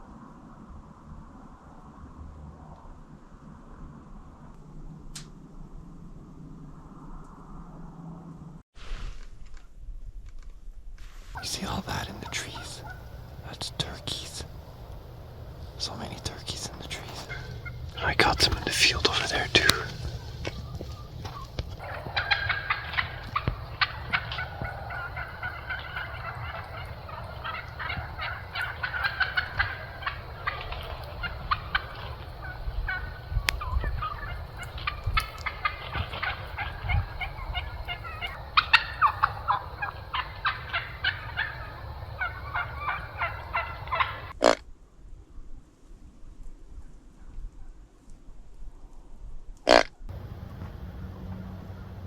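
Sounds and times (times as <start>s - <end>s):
wild turkeys calling: 11.4s - 44.4s, 50.1s - 52.0s.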